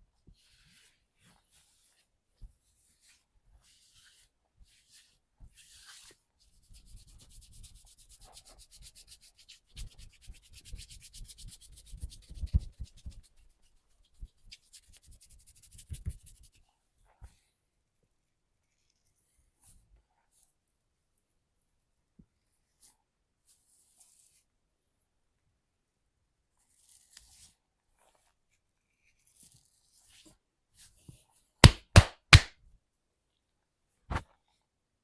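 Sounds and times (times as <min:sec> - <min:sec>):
dull thumps: 0:31.6 - 0:32.5
hands rubbing over skin: 0:31.6 - 0:32.5.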